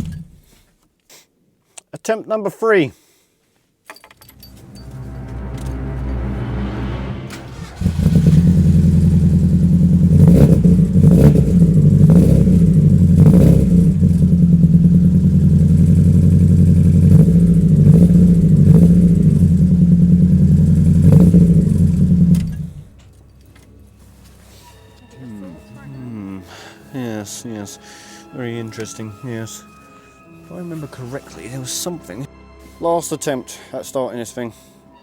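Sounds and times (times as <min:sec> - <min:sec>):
sharp engine pops: 0:00.0 - 0:00.5
car engine cranking: 0:00.0 - 0:00.6, 0:04.2 - 0:23.9.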